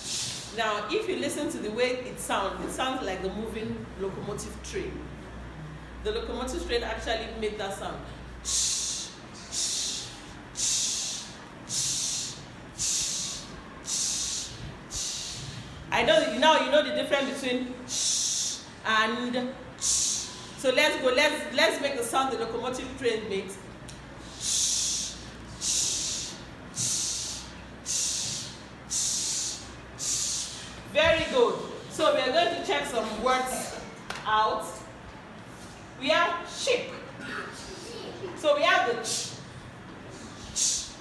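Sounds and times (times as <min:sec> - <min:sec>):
woman making hissing ch sounds: 0:00.0 - 0:00.6, 0:08.4 - 0:15.8, 0:17.8 - 0:18.8, 0:19.8 - 0:20.6, 0:24.2 - 0:30.9, 0:39.0 - 0:39.5, 0:40.2 - 0:41.0.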